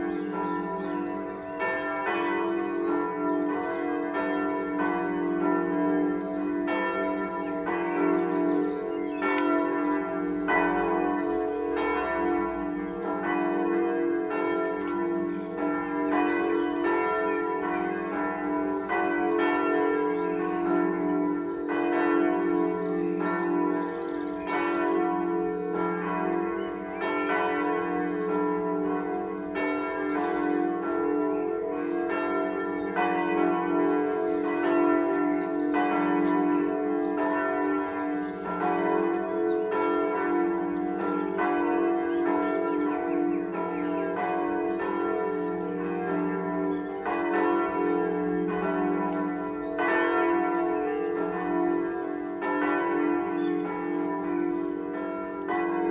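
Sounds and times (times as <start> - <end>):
church bells pealing: 0.0 - 55.9.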